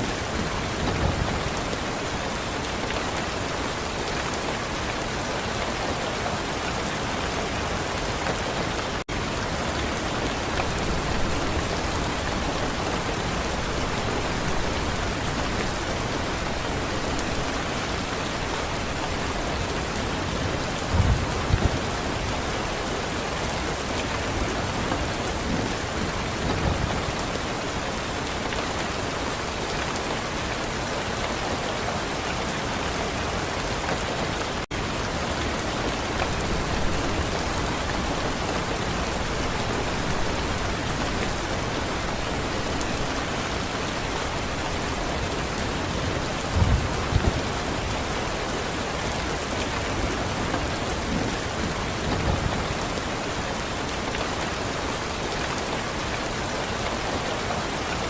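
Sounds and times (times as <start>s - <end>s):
heavy rain falling: 0.0s - 58.0s
low rumbles of thunder: 20.0s - 22.5s, 44.7s - 47.7s.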